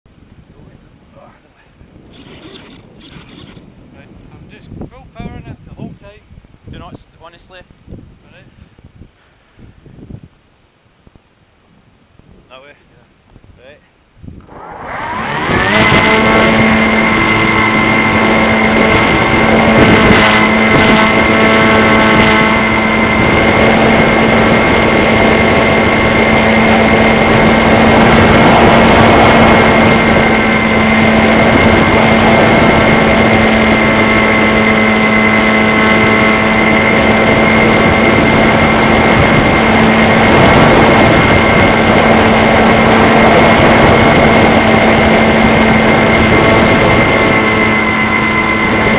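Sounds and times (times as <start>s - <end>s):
model airplane motor whining: 2.0s - 3.7s, 14.4s - 48.9s.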